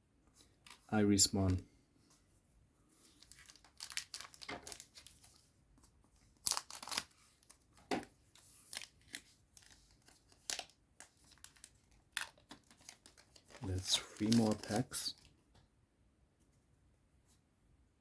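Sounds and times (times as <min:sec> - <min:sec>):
foil wrapper tearing and crinkling: 0:03.1 - 0:05.3, 0:06.4 - 0:15.2.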